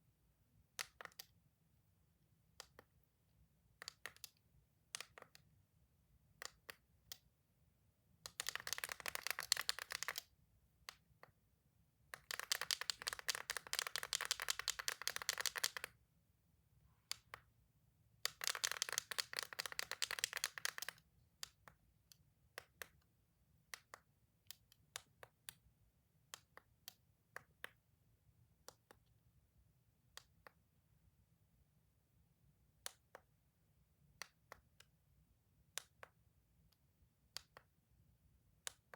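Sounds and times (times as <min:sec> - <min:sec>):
toys clicking: 0:18.3 - 0:21.0.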